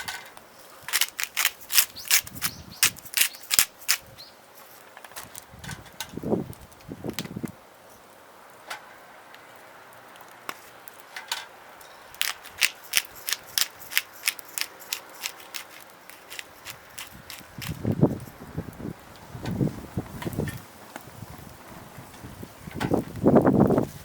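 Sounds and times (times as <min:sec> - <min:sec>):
handling rustle: 0:00.0 - 0:06.0, 0:12.0 - 0:18.4
wood fire crackling and popping: 0:12.1 - 0:18.1.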